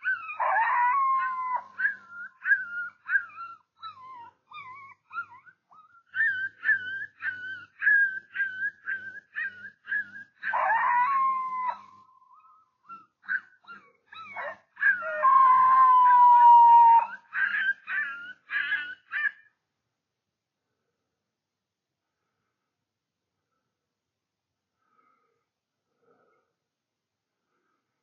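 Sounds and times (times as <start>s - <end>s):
coyote howling: 0.0s - 19.4s
coyote yips and whimpers: 0.0s - 19.5s.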